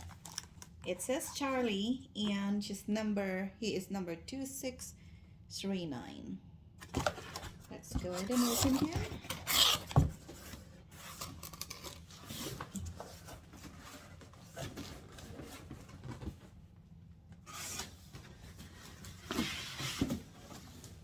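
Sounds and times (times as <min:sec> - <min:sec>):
cardboard rubbing and scraping: 0:08.1 - 0:15.9.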